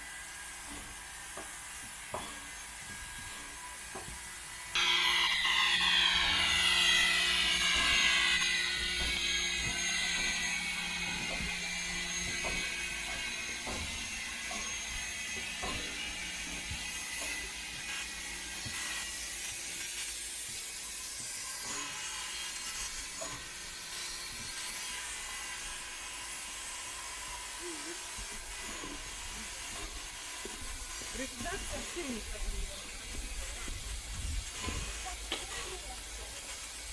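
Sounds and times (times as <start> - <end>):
steam locomotive hissing: 0.0 - 36.9
scattered knocks: 6.4 - 17.7.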